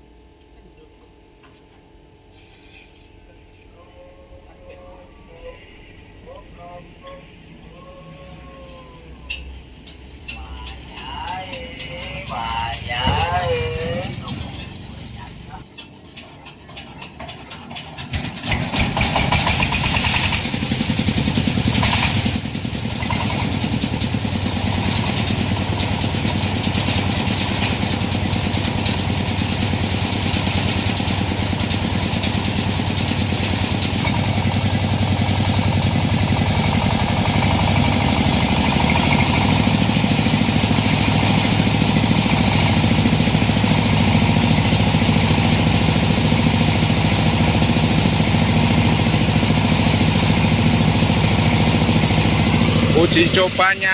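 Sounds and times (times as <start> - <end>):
diesel engine starting and running: 3.2 - 53.9.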